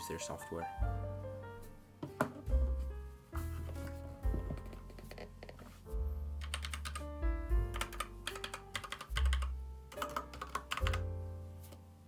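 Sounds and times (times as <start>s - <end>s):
background music with bass: 0.0s - 11.9s
mechanical keyboard clicking: 6.4s - 7.0s, 7.7s - 11.0s.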